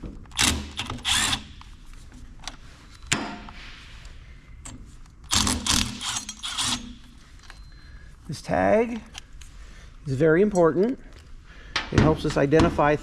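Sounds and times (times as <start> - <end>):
ratchet clicking: 0.3 - 1.6, 5.3 - 7.0
sharp metal click: 5.3 - 7.0.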